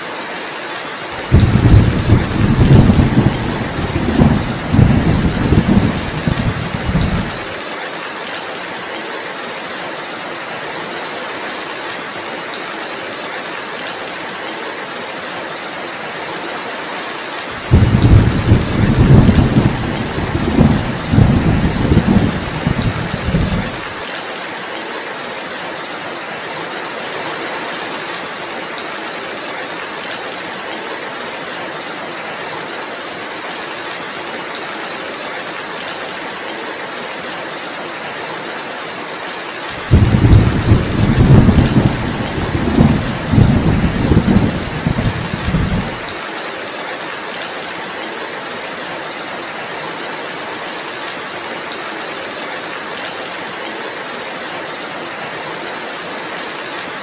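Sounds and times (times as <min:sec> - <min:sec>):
heavy rainfall: 0:00.0 - 0:57.0
thunder rumbling: 0:01.2 - 0:07.5, 0:17.6 - 0:23.9, 0:39.8 - 0:46.1.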